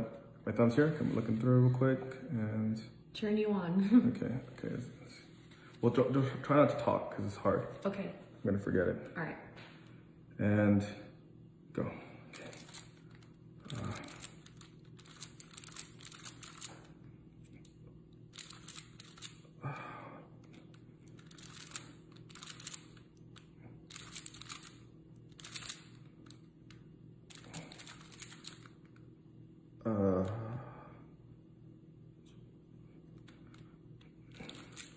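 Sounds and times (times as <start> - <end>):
puzzle cube clicking and rattling: 12.4 - 16.7, 18.3 - 19.4, 21.1 - 26.4, 27.3 - 28.7, 34.4 - 34.9.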